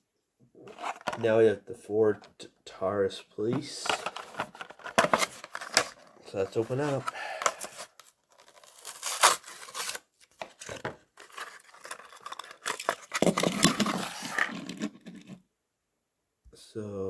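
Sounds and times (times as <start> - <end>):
packaging tearing and crinkling: 3.8 - 15.3.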